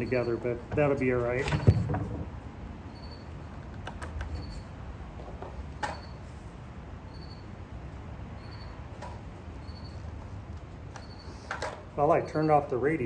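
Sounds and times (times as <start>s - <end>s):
faint high-pitched chirp: 2.9s - 3.3s, 7.1s - 7.5s, 8.4s - 8.8s, 9.6s - 10.0s.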